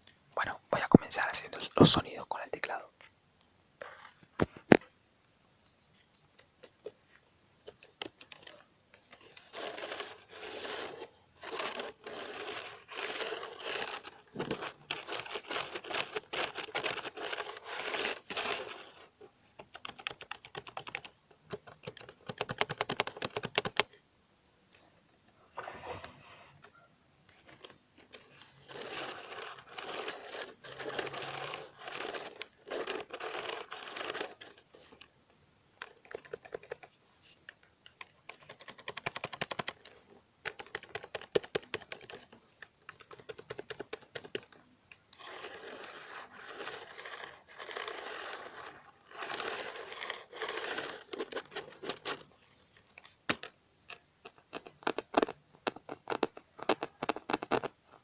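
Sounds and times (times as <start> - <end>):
rubbing and scratching on keys: 6.5 - 23.9, 26.5 - 35.1, 35.8 - 44.6, 45.2 - 53.1
keyboard key clicks and taps: 19.6 - 23.9.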